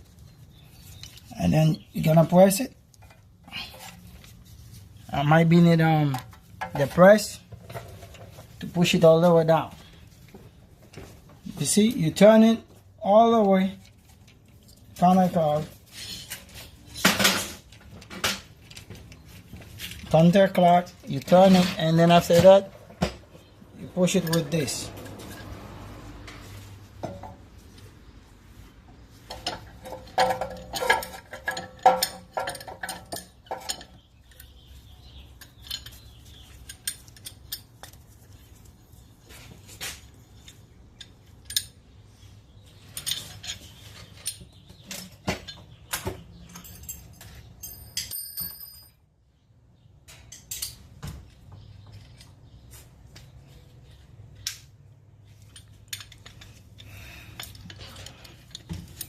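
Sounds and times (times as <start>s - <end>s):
metal tools clinking on brake caliper: 23.8s - 25.6s, 29.3s - 38.2s, 46.4s - 49.0s, 55.4s - 59.0s.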